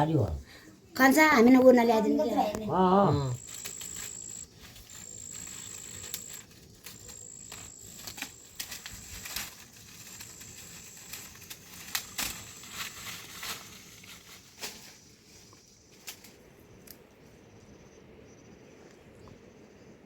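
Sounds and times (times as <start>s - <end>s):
insect trilling: 2.2s - 13.4s.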